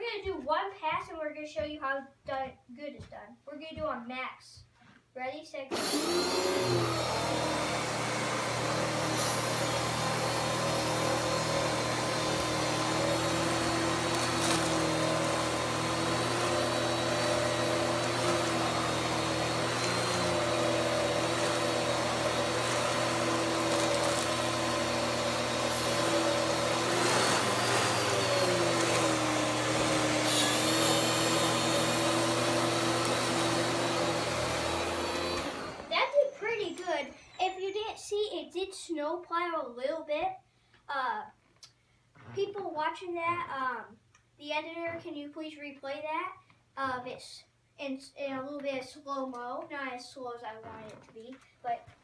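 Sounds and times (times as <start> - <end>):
vacuum cleaner on carpet: 5.7 - 37.4.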